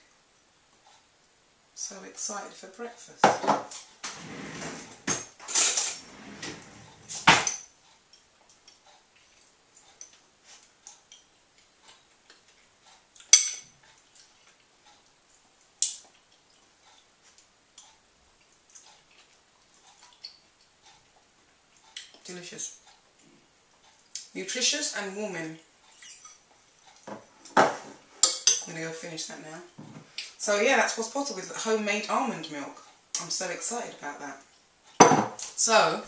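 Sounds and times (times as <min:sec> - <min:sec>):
spoon scraping a bowl: 0:25.9 - 0:26.4.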